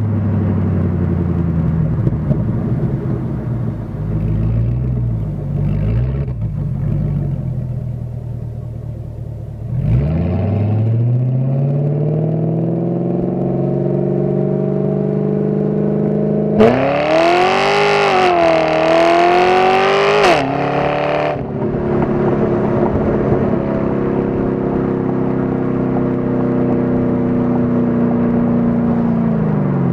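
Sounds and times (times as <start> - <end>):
car exhaust engine drone: 0.0 - 29.9
engine revving at full throttle: 9.7 - 29.9.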